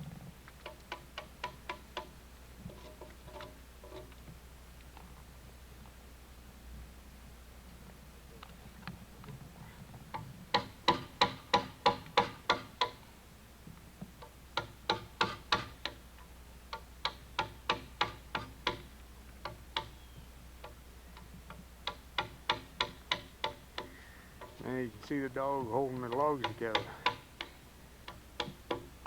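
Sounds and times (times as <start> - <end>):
ringing hand tool strikes on log: 10.5 - 13.0, 14.6 - 16.0, 17.0 - 20.0, 21.8 - 24.6, 25.6 - 28.9.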